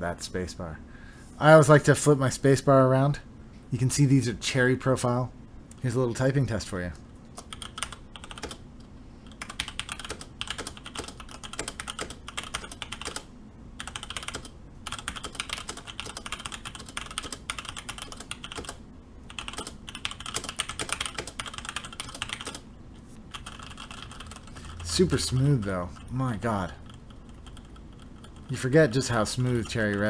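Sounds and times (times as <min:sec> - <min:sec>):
mechanical keyboard typing: 0:07.4 - 0:08.6, 0:09.3 - 0:22.6, 0:23.3 - 0:30.0.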